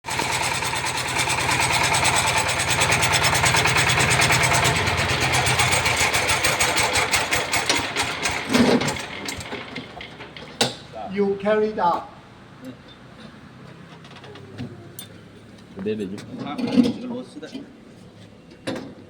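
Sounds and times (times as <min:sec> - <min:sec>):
diesel engine chugging: 0:00.0 - 0:10.6.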